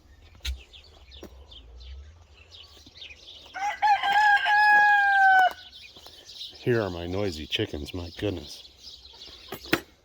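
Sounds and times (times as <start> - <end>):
faint high bird chirps: 0.0 - 10.0
rooster crowing: 3.5 - 5.6.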